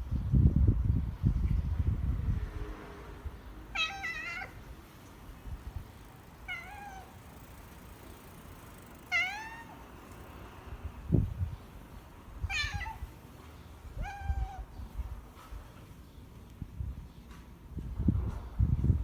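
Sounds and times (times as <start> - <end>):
cat meowing: 3.7 - 4.7, 6.4 - 7.4, 9.0 - 9.9, 12.4 - 13.2, 13.8 - 14.8.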